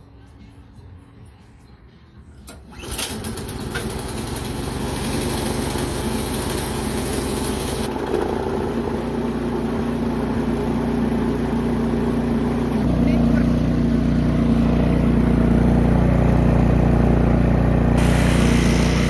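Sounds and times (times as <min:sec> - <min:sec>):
snowblower engine running: 0:02.7 - 0:19.0
high hiss: 0:18.0 - 0:19.0.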